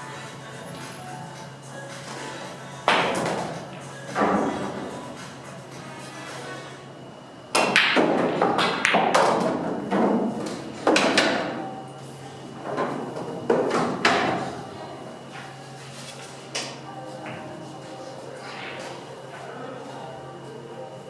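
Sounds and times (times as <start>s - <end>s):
pool balls clacking: 7.5s - 11.7s.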